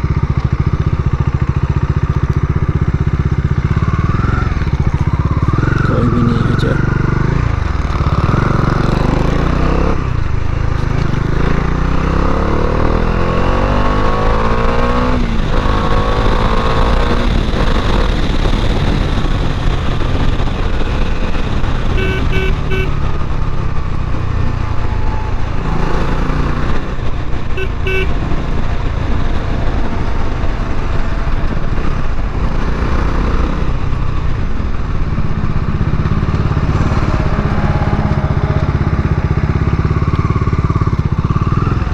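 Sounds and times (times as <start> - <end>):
motorcycle engine accelerating: 0.0 - 41.9
short horn beeps: 22.0 - 23.0, 27.6 - 28.2.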